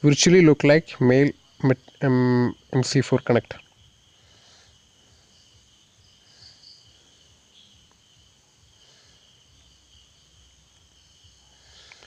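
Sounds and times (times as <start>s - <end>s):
insect chirping: 0.0s - 12.0s.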